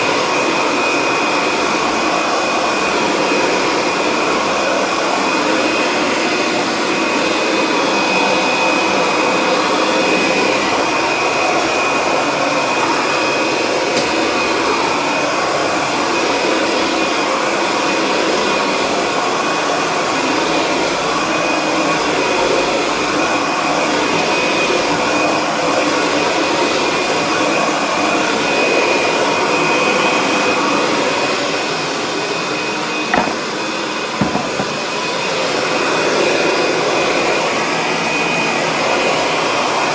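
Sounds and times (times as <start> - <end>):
vacuum cleaner running: 0.0 - 39.9
sharp knocks: 33.2 - 35.0.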